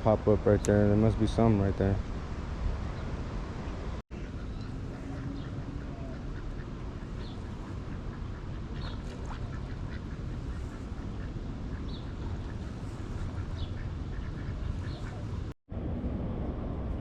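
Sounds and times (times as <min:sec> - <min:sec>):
steady background noise: 0:00.0 - 0:17.0
ducks quacking: 0:04.2 - 0:15.5.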